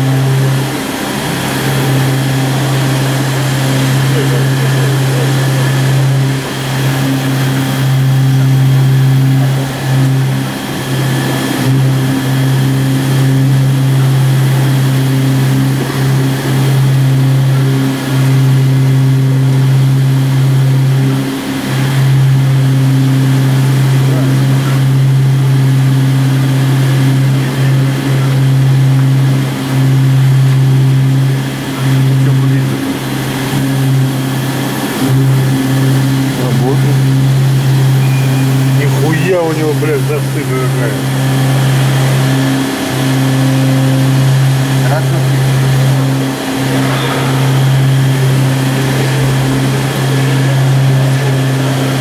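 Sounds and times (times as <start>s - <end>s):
milling machine running: 0.0s - 52.0s
faint high tone: 38.0s - 38.8s, 46.7s - 48.6s.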